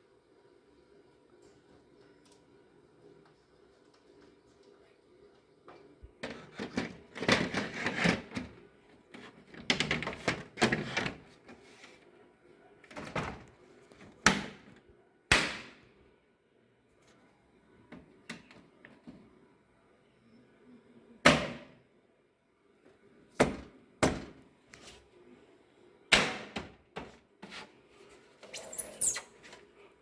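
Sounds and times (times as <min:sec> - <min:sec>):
computer case parts clattering: 0:06.2 - 0:08.6, 0:09.2 - 0:11.3.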